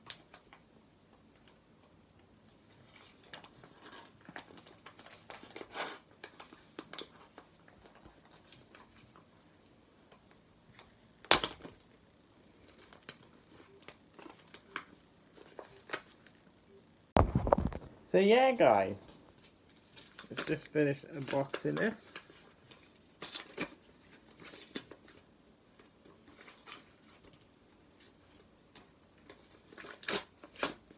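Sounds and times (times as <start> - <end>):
packaging crinkling and scraping: 2.7 - 9.3, 17.2 - 20.6, 21.2 - 27.4, 28.8 - 30.9
sharp knock: 17.2 - 18.0.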